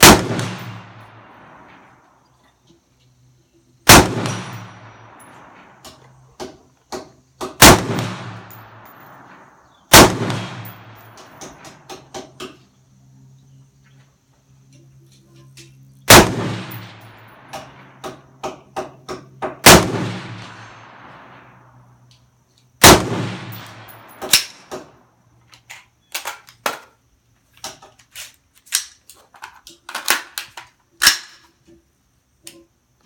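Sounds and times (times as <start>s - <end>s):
rifle shots echoing: 0.0s - 2.0s, 3.8s - 5.8s, 7.4s - 12.1s, 16.1s - 18.2s, 19.6s - 21.8s, 22.8s - 24.9s.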